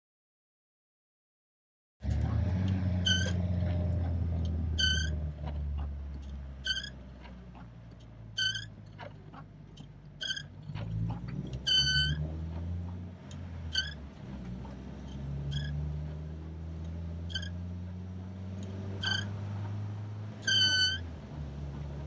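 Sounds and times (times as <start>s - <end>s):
short high-pitched squeak: 2.5s - 3.7s, 4.3s - 5.3s, 6.1s - 7.1s, 8.0s - 8.8s, 9.6s - 12.3s, 13.2s - 14.0s, 14.6s - 15.9s, 16.7s - 17.7s, 18.5s - 19.5s, 20.2s - 21.1s.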